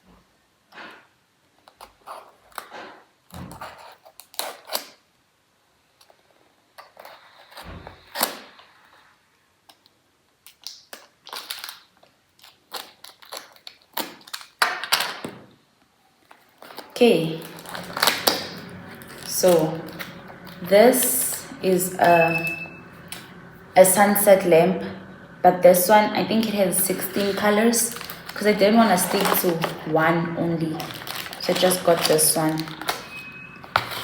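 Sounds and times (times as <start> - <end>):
packaging rustling and crinkling: 9.7 - 15.3, 16.2 - 23.4, 26.4 - 34.0.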